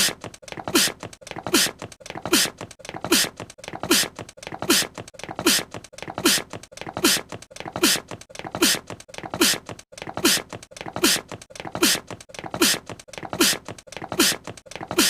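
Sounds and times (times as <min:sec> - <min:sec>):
cartoon voice sneezing: 0:03.1 - 0:12.8, 0:13.4 - 0:13.6, 0:14.2 - 0:15.0.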